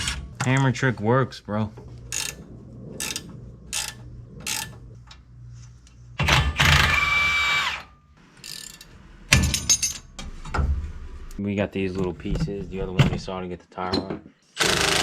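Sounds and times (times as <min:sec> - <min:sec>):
power tool running: 0:14.6 - 0:15.0.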